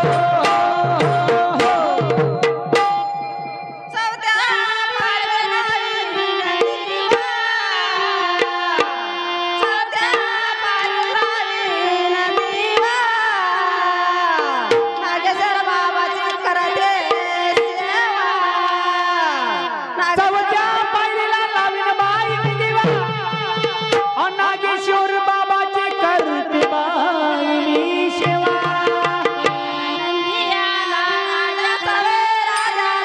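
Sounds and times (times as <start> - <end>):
woman singing: 0.0 - 2.5, 3.8 - 33.0
steady held tones: 0.0 - 7.2
tabla playing: 0.0 - 33.0.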